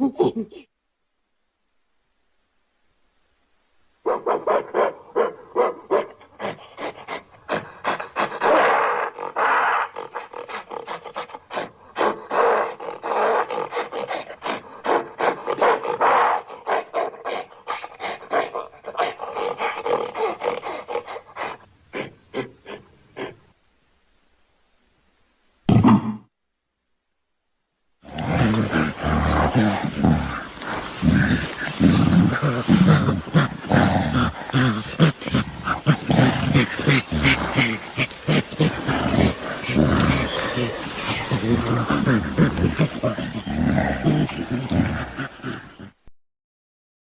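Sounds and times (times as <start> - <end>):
gorilla grunting and roaring: 5.3 - 23.4, 25.7 - 26.3, 28.0 - 46.0.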